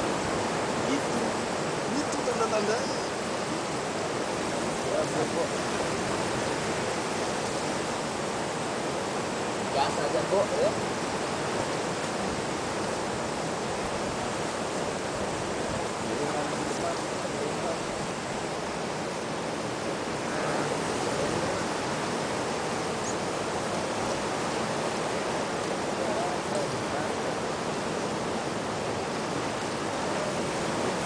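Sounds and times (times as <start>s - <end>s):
steady rushing noise: 0.0s - 31.0s
faint voices: 20.2s - 21.8s.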